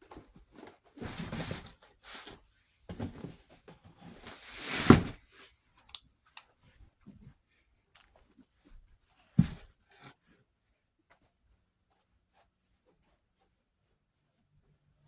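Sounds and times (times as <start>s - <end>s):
rustling: 0.2s - 5.2s.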